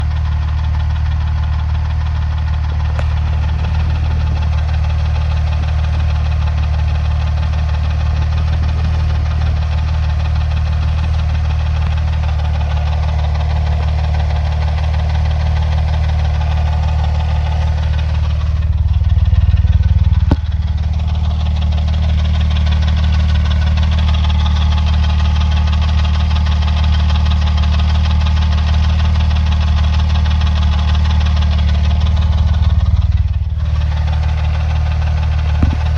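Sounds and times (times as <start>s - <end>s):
car engine idling: 0.0s - 35.9s.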